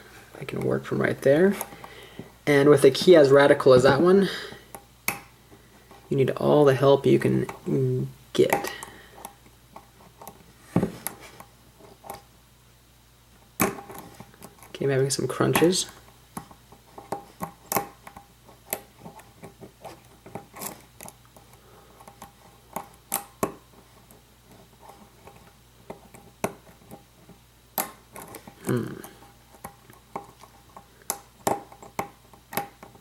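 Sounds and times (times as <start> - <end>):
dull thump: 10.7 - 11.1.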